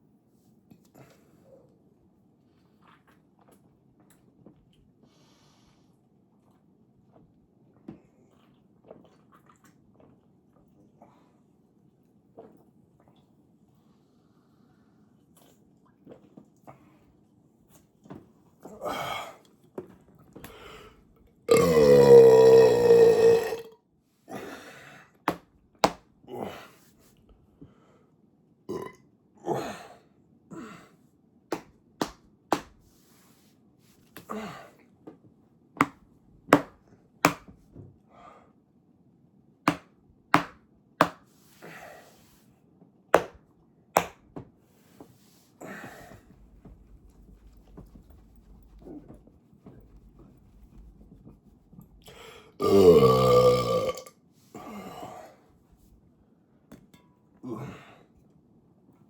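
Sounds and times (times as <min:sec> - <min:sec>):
man belching: 0:21.5 - 0:23.8, 0:28.7 - 0:29.0, 0:52.6 - 0:54.1
breathy sounds: 0:52.0 - 0:53.1.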